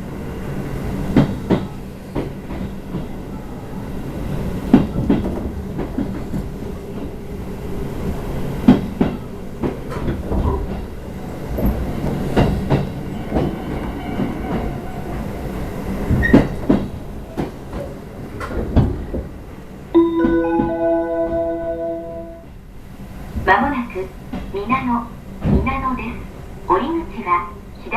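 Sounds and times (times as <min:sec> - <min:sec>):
train wheels rumbling on track: 0:00.0 - 0:21.5, 0:22.4 - 0:27.9
wheels clacking over rail joints: 0:08.6 - 0:19.4.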